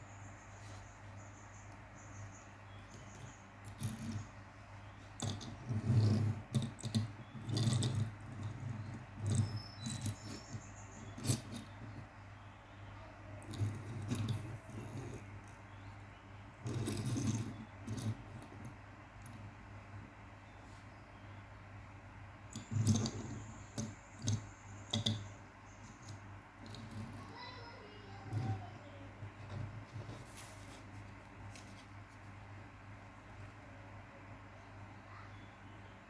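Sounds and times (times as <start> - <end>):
steady low hum: 0.0 - 36.0
toy clicks rattles and scrapes: 2.8 - 4.4, 5.1 - 12.1, 13.4 - 15.6, 16.6 - 19.5, 22.5 - 28.7.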